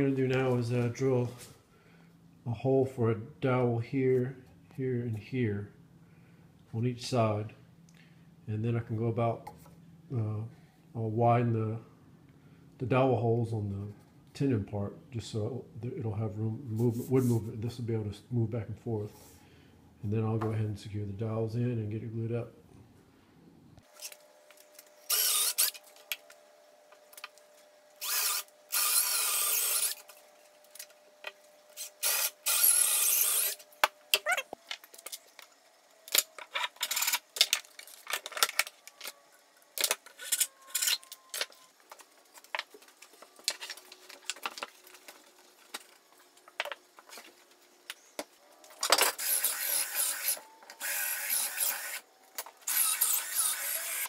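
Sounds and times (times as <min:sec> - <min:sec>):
power drill boring wood: 0:25.1 - 0:25.8, 0:28.0 - 0:30.1, 0:31.8 - 0:33.6, 0:49.1 - 0:52.0, 0:52.6 - 0:54.0.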